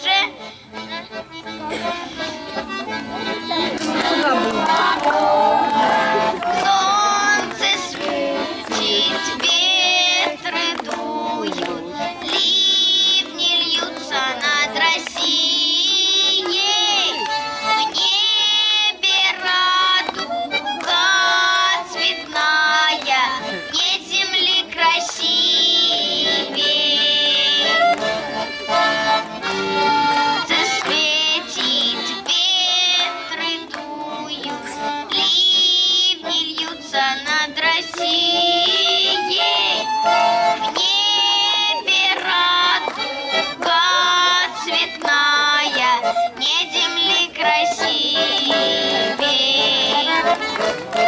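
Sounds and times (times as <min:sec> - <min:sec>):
accordion: 0:00.0 - 0:51.0
children singing: 0:03.6 - 0:11.5, 0:12.3 - 0:17.2, 0:20.8 - 0:27.8, 0:30.4 - 0:39.9, 0:40.6 - 0:50.4.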